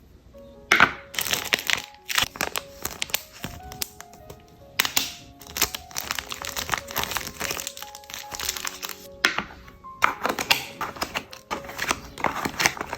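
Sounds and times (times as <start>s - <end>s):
soft background music: 0.0s - 12.9s
plastic packaging crinkling: 0.8s - 12.9s.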